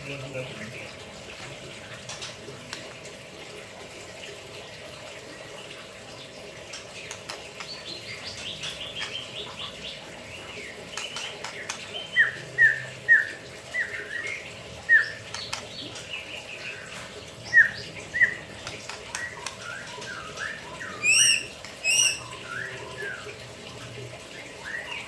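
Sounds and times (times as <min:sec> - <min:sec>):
bird singing: 0:07.7 - 0:18.5, 0:19.1 - 0:23.3
water splashing: 0:08.4 - 0:24.8.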